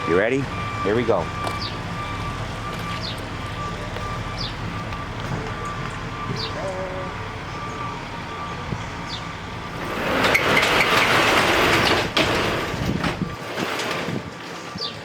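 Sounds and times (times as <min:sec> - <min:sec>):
metal roll-up door rattling: 0:09.0 - 0:15.0.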